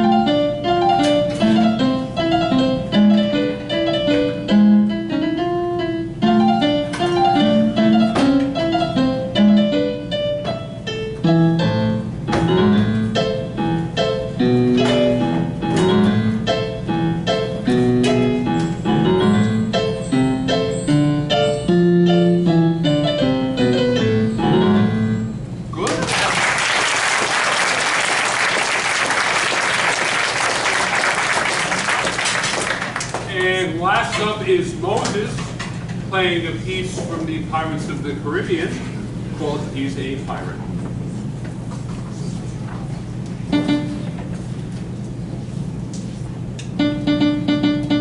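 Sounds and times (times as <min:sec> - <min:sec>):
solo piano piece: 0:00.0 - 0:25.7, 0:43.4 - 0:44.2, 0:46.7 - 0:48.0
audience applause: 0:25.8 - 0:33.3.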